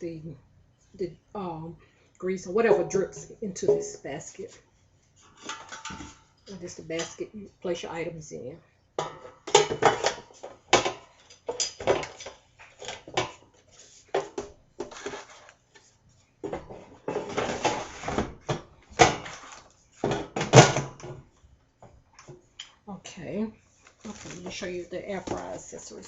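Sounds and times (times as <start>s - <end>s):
air fryer parts knocking and clattering: 5.4s - 6.2s, 9.0s - 13.4s, 20.0s - 21.2s.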